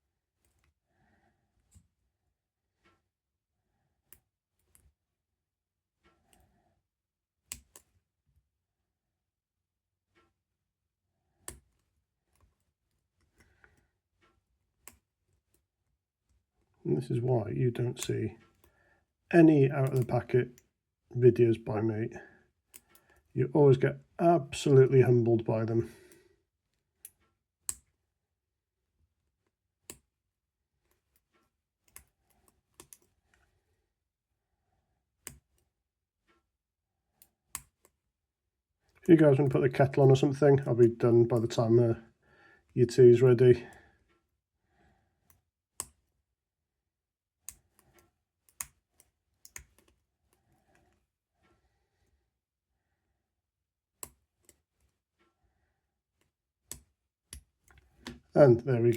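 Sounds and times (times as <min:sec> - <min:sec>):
lock pick clicking and scraping: 0:47.4 - 0:51.0.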